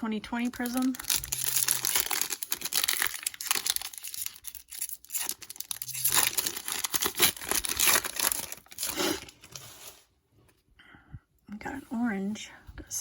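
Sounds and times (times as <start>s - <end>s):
plastic wrapper tearing and crinkling: 0.4s - 9.6s.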